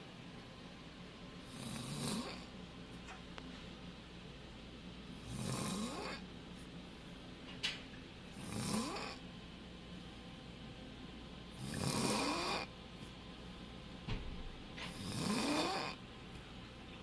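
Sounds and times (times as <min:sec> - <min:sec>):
man snoring loudly: 0:01.5 - 0:02.5, 0:05.2 - 0:06.2, 0:08.4 - 0:09.2, 0:11.6 - 0:12.7, 0:15.0 - 0:16.0.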